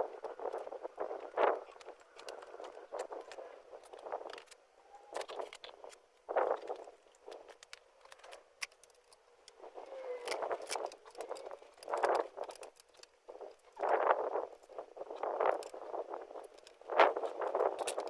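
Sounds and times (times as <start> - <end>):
tools and metal parts clinking: 6.6 - 13.9.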